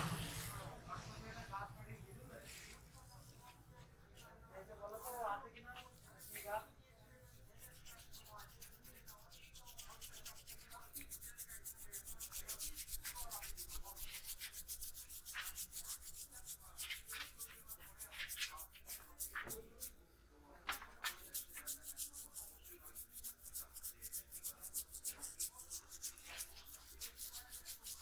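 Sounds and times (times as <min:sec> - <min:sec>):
hands rubbing scalp and hair: 0:07.6 - 0:19.9, 0:20.7 - 0:28.0.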